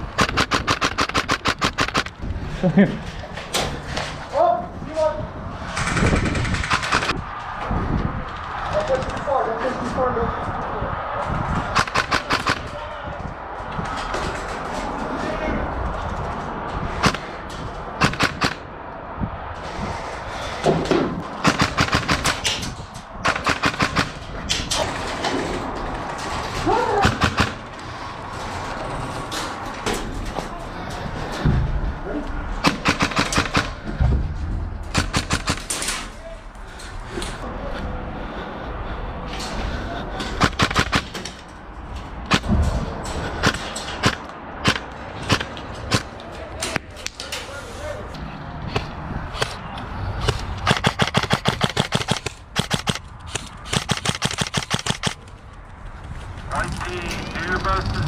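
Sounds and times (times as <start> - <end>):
outdoor noise: 0.0 - 58.0
airsoft guns firing: 0.2 - 2.2, 5.7 - 7.2, 11.7 - 12.7, 18.0 - 18.6, 21.4 - 22.6, 23.2 - 24.2, 27.0 - 27.7, 32.6 - 33.8, 34.9 - 35.8.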